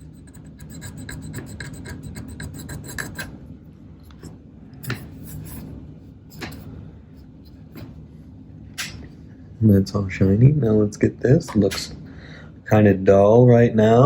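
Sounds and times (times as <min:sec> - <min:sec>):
toothpick scratching in screw hole: 0:00.0 - 0:03.4, 0:04.1 - 0:05.7, 0:06.3 - 0:06.7.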